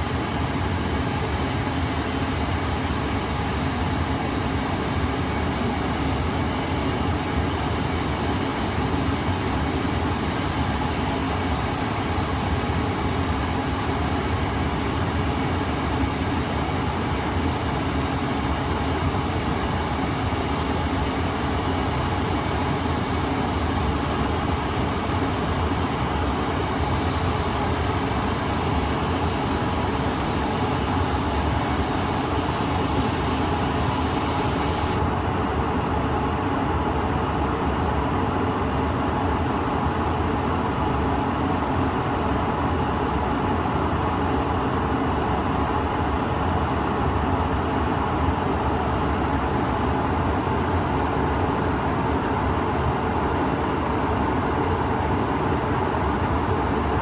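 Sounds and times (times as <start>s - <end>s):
jet engines humming: 17.5s - 35.1s
air rushing over fuselage: 27.1s - 35.0s.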